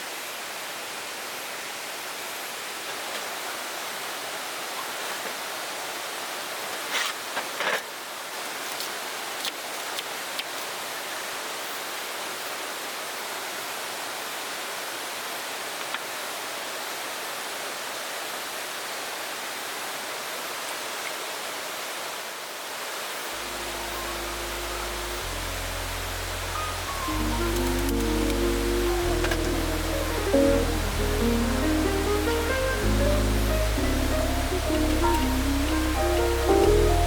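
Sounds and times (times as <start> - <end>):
stream rushing: 10.0 - 37.0.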